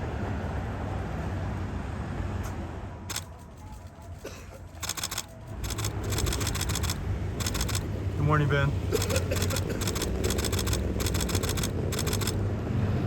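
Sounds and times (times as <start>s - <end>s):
street traffic rumble: 0.0s - 13.0s
camera shutter clicks: 3.1s - 3.9s, 4.6s - 7.9s, 9.0s - 12.4s.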